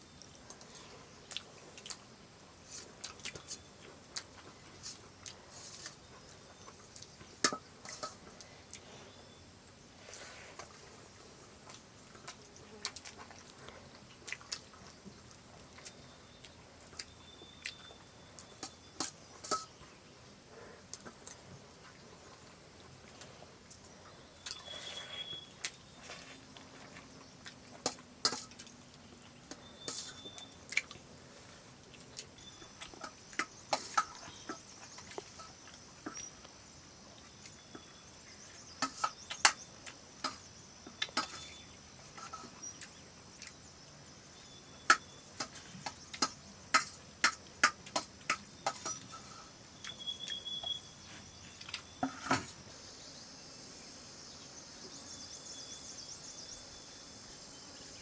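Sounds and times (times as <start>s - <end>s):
dishes and utensils clinking: 7.4s - 8.3s, 18.6s - 19.8s, 27.8s - 28.7s, 29.6s - 30.3s, 41.1s - 42.6s, 44.9s - 49.5s.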